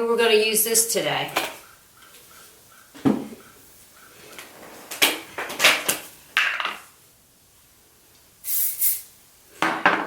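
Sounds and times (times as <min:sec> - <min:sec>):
spray bottle squirts: 0:08.4 - 0:09.1.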